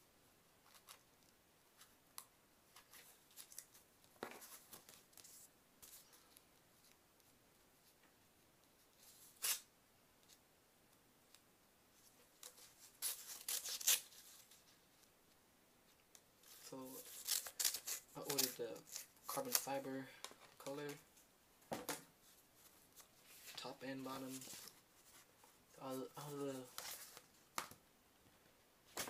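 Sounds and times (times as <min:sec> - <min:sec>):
paper tearing and rustling: 0:09.1 - 0:09.7, 0:12.4 - 0:14.6, 0:16.4 - 0:19.7
knife slitting envelope: 0:17.0 - 0:19.6.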